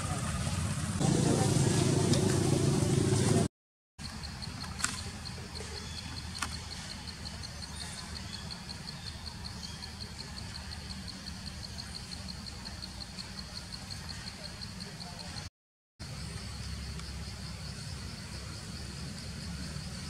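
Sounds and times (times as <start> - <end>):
high-pitched insect trill: 4.0 - 20.0.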